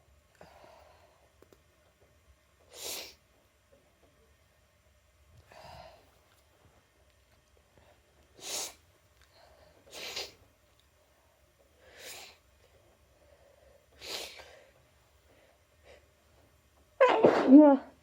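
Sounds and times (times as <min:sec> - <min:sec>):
person taking noisy breaths: 0:00.3 - 0:01.4, 0:05.4 - 0:06.2, 0:11.2 - 0:16.2.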